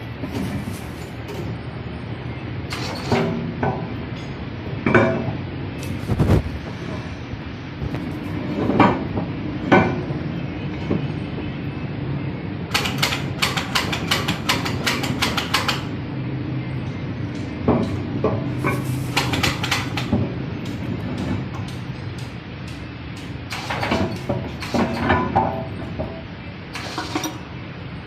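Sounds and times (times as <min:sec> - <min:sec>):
low machine hum: 0:00.0 - 0:28.0
metal clanking and knocking: 0:12.7 - 0:15.9, 0:17.6 - 0:27.4
rapid sharp metallic clicks: 0:12.7 - 0:15.9.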